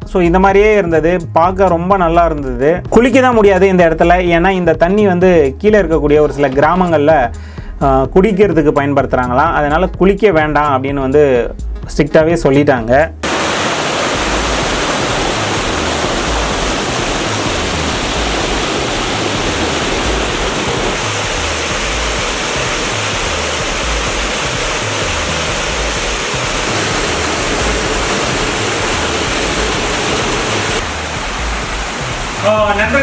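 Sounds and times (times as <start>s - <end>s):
waterfall and stream rushing: 13.2s - 33.0s.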